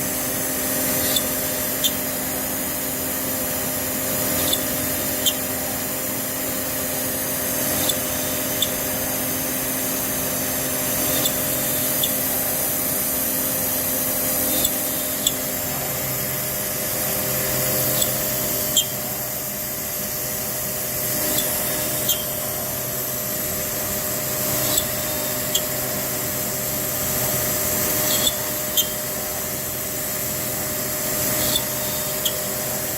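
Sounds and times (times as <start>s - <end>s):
cnc router whining: 0.0s - 32.9s.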